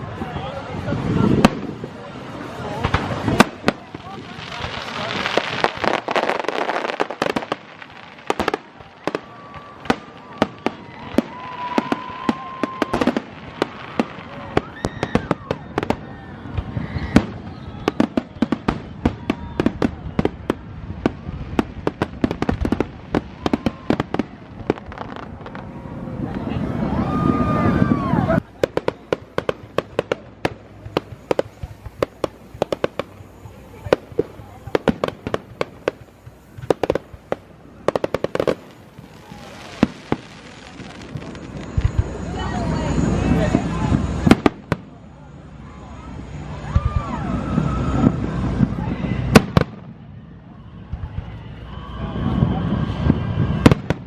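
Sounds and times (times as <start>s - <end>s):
fireworks bangs and cracks: 0.0s - 54.0s
rumble of explosions: 0.0s - 54.0s.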